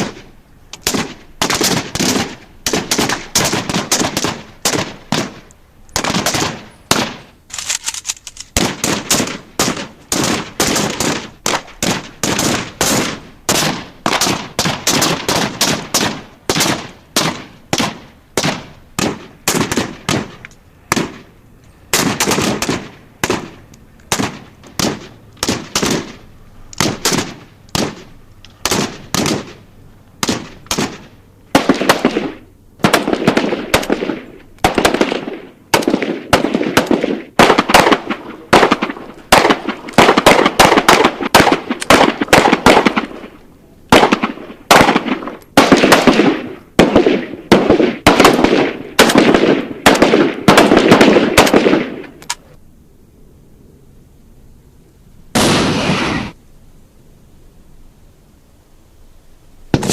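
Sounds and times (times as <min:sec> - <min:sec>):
gunfire single shots: 0:00.0 - 0:05.4, 0:06.0 - 0:07.3, 0:08.6 - 0:21.3, 0:21.9 - 0:26.2, 0:26.8 - 0:29.6, 0:30.2 - 0:52.2, 0:55.4 - 0:56.4
automatic gunfire bursts: 0:00.8 - 0:05.4, 0:06.0 - 0:07.7, 0:08.6 - 0:21.2, 0:21.9 - 0:26.2, 0:30.2 - 0:43.3, 0:43.9 - 0:52.0.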